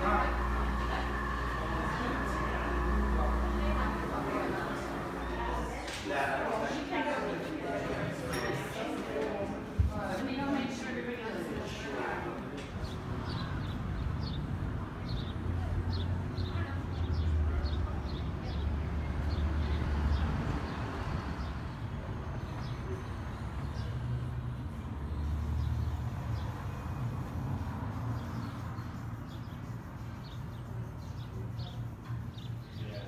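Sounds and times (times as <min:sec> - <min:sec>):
small birds chirping: 0:27.8 - 0:33.0.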